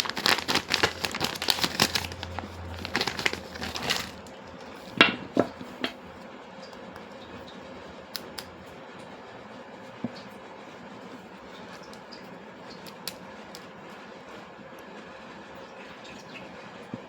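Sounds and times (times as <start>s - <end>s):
plastic packaging crinkling: 0.0s - 6.0s.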